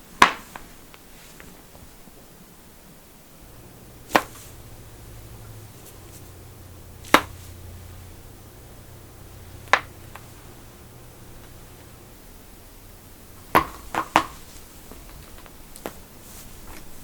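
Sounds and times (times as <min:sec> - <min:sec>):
neck joints cracking: 0:13.3 - 0:17.0.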